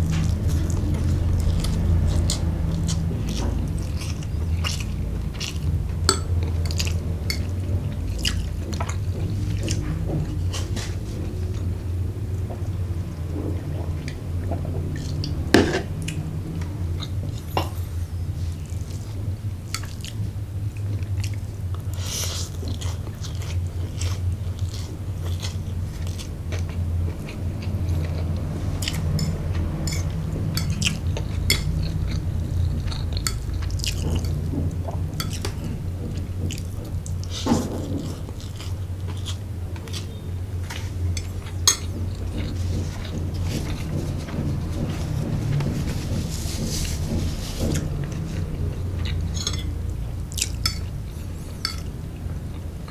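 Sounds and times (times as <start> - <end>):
steady low hum: 0.0 - 52.9
wet chewing mouth clicks: 0.1 - 5.8.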